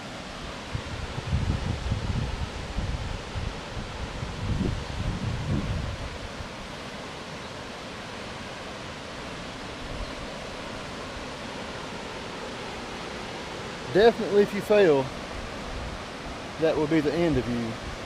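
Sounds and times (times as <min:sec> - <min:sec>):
waterfall rushing: 0:00.0 - 0:18.0
wind buffeting microphone: 0:00.4 - 0:06.8, 0:14.8 - 0:18.0.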